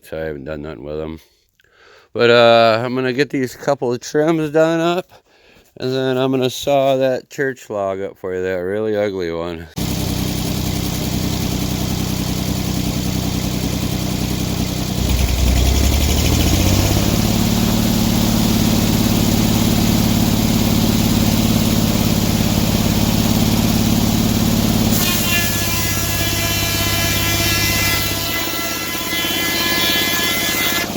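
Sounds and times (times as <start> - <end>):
engine idling and revving: 9.8 - 30.9.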